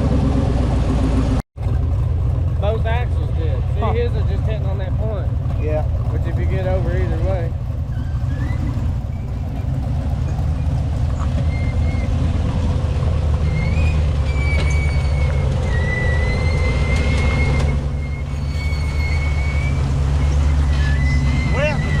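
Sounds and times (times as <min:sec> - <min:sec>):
engine running at low revs: 0:00.0 - 0:22.0
high-pitched squeal: 0:07.8 - 0:22.0.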